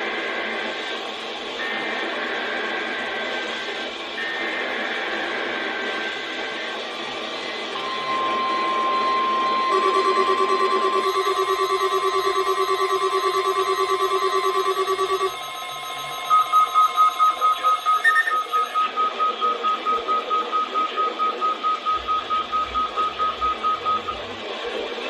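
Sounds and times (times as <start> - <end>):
fast-pulsing two-tone beep: 7.8 - 24.2
higher single-tone beeps: 7.9 - 24.2.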